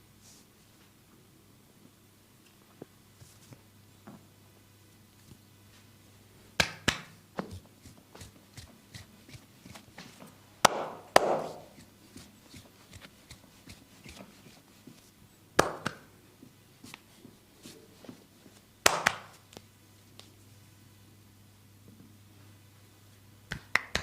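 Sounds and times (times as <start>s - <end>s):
hands slapping skin: 6.6s - 9.4s, 10.6s - 14.6s, 15.6s - 16.1s, 18.8s - 19.6s, 23.5s - 24.0s
hands tapping and clicking: 6.6s - 9.4s, 10.6s - 14.4s, 15.6s - 16.1s, 23.5s - 24.0s.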